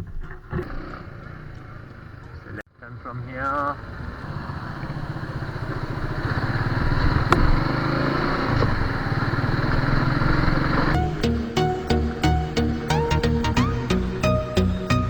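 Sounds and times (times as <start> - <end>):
motorcycle engine running: 0.1 - 14.0
music: 11.0 - 15.0.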